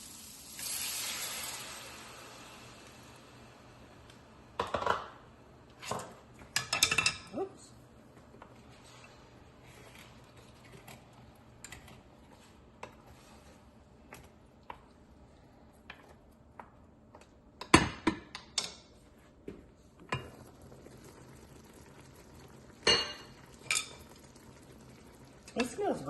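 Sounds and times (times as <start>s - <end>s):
utensils clattering against dishes: 5.9s - 7.4s.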